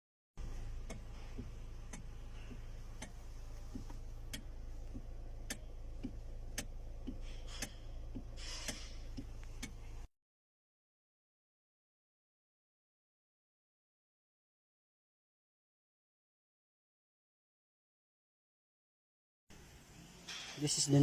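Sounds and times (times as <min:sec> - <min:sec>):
steady low hum: 0:00.4 - 0:10.1
steering clicking: 0:00.4 - 0:10.1.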